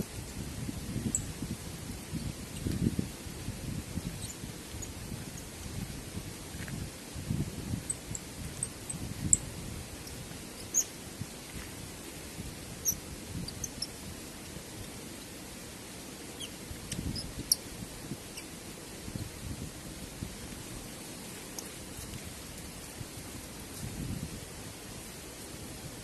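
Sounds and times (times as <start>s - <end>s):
wind gusts: 0.0s - 26.0s
bird chirps: 10.6s - 10.9s, 16.3s - 17.6s.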